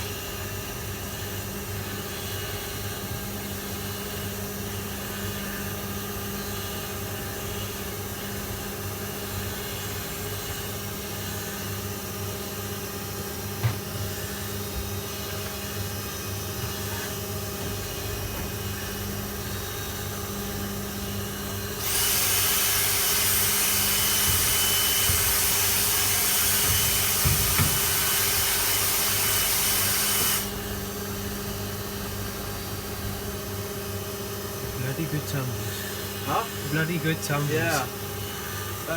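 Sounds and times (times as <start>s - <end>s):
washing machine motor hum: 0.0s - 38.9s
knock: 26.6s - 27.8s
loud steady hiss: 34.8s - 38.0s.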